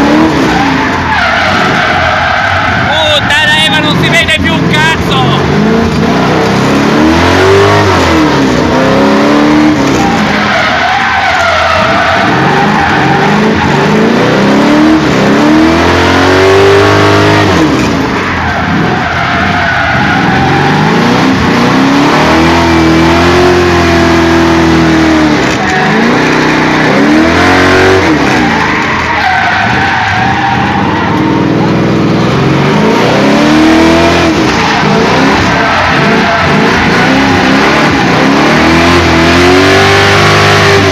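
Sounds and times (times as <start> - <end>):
car engine revving: 0.0 - 40.9
tyres squealing: 0.2 - 5.7, 9.7 - 14.0, 18.0 - 21.3, 24.9 - 31.8, 34.0 - 40.9.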